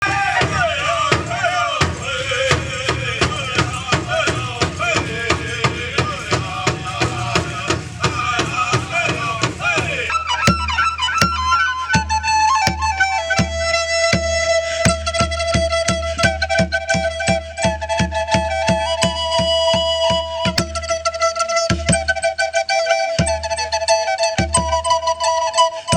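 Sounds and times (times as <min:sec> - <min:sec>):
voices singing: 0:00.0 - 0:10.2
hand drum beat: 0:00.0 - 0:10.6
powwow drum beat: 0:00.0 - 0:25.0
flute playing long notes: 0:07.3 - 0:25.9.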